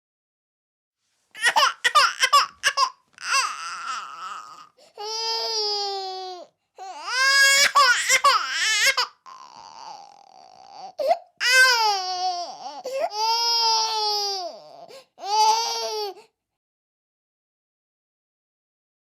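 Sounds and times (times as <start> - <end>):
infant crying: 1.4 - 16.3.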